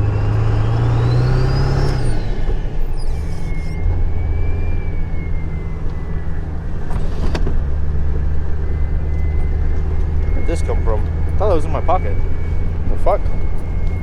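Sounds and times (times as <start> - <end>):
diesel engine running: 0.0 - 14.0
turbo whistle: 2.9 - 7.4, 8.4 - 14.0.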